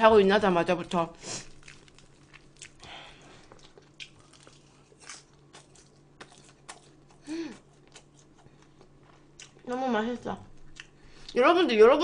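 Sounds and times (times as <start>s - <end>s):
person chewing food: 1.4s - 9.7s, 10.6s - 11.4s.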